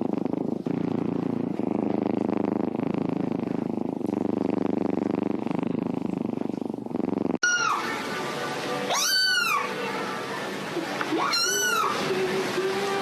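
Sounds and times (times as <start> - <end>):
cat purring: 0.0 - 7.4.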